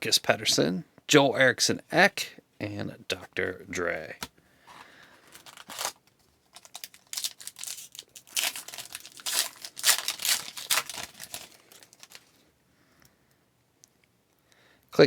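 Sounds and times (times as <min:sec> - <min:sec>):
card pack wrapper tearing: 0:04.1 - 0:12.3.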